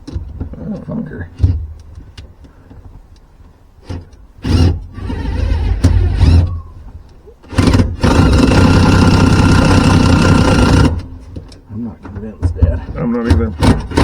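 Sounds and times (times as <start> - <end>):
motor running in bursts: 4.4 - 6.5, 7.5 - 11.1.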